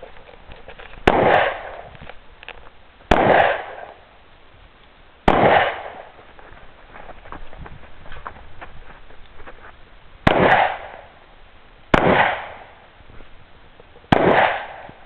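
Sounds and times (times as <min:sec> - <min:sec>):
gunshots with echo: 0:01.1 - 0:01.9, 0:03.1 - 0:03.9, 0:05.3 - 0:06.1, 0:10.2 - 0:11.0, 0:11.9 - 0:12.7, 0:14.1 - 0:15.0.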